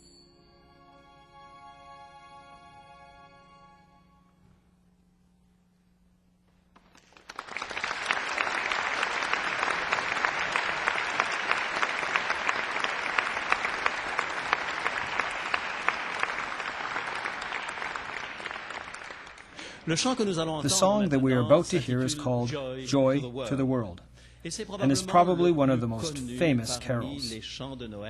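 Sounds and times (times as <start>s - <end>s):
audience applauding: 6.8s - 20.3s.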